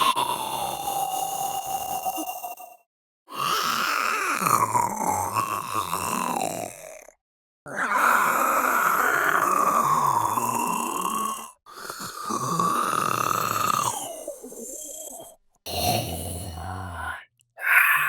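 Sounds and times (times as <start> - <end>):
raspy creature voice groaning: 12.2 - 18.0.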